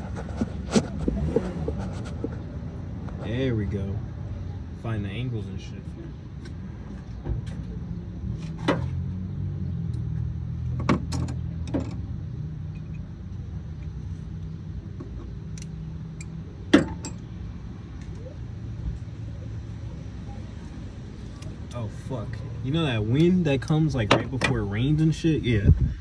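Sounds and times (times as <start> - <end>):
steady low rumble: 18.8 - 26.0.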